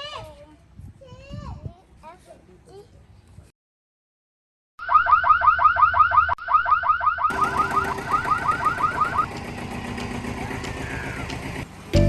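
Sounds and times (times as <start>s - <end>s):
electronic alarm chirping: 4.8s - 9.3s
steady background noise: 7.3s - 12.0s.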